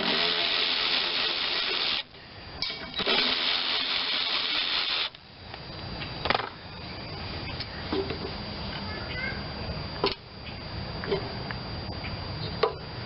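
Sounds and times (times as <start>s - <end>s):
power drill running: 0.0s - 2.2s, 3.0s - 5.2s.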